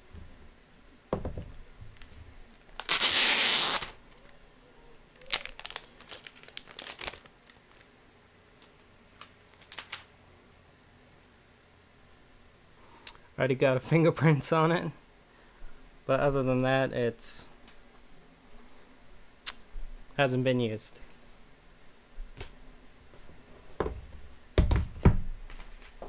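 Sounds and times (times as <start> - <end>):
plastic packaging ripping: 2.7 - 4.2, 5.2 - 7.9, 9.2 - 10.1
plastic clicks and crinkles: 5.2 - 7.9, 8.6 - 10.1.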